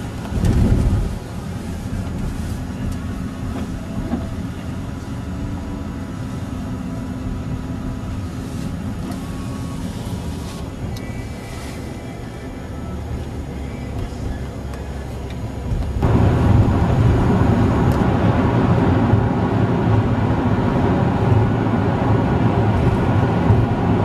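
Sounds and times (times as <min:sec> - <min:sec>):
car engine and road rumble: 0:00.0 - 0:24.0
low rush: 0:07.2 - 0:24.0.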